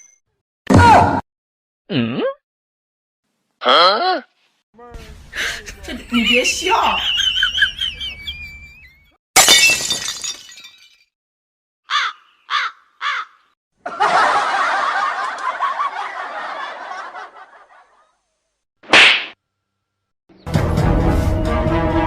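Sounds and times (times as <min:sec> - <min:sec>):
dense noisy laughter: 0:13.8 - 0:18.2.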